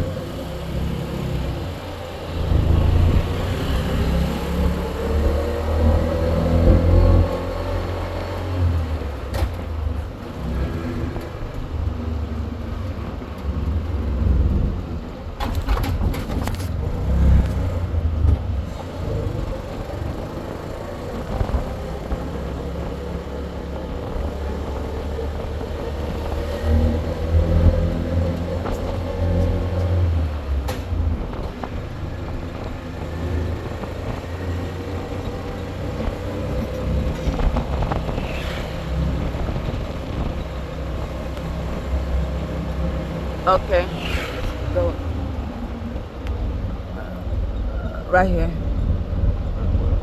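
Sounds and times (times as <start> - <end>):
vehicle engine and road rumble: 0.0 - 50.0.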